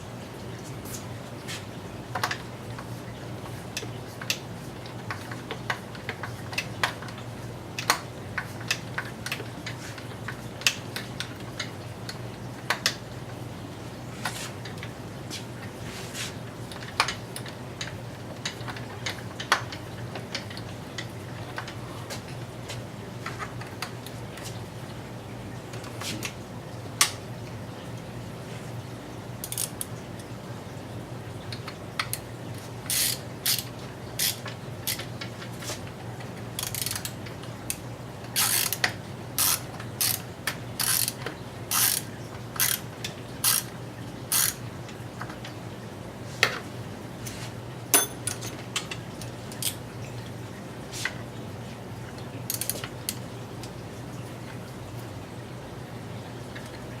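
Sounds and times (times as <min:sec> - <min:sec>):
ratchet tool clicking: 0:32.9 - 0:35.0, 0:36.6 - 0:37.1, 0:38.4 - 0:38.8, 0:39.4 - 0:40.2, 0:40.8 - 0:42.0, 0:42.6 - 0:42.8, 0:43.4 - 0:43.7, 0:44.3 - 0:44.6.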